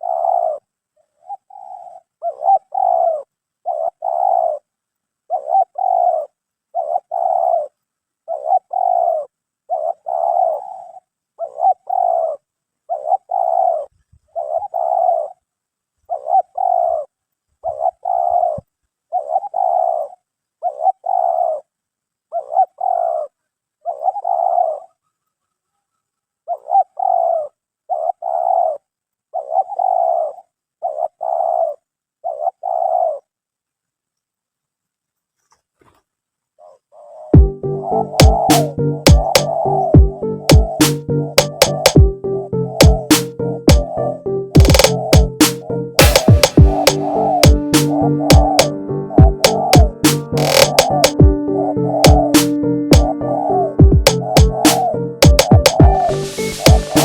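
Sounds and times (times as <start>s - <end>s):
dove cooing: 0.0s - 0.6s, 1.2s - 4.6s, 5.3s - 7.7s, 8.3s - 15.4s, 16.1s - 21.6s, 22.3s - 24.9s, 26.5s - 28.8s, 29.4s - 33.2s.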